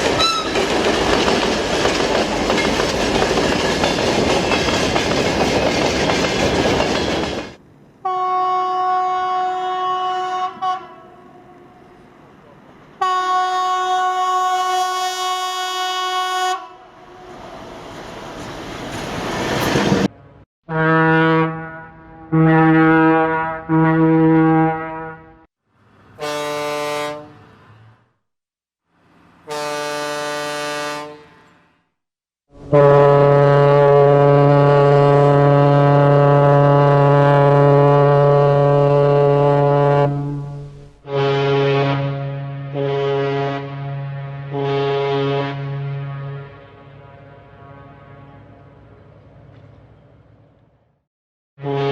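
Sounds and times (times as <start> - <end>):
vehicle horn long note: 8.0 - 11.0, 13.0 - 16.8, 20.7 - 25.4, 26.2 - 27.4, 29.5 - 31.4, 32.5 - 48.7, 51.6 - 51.9.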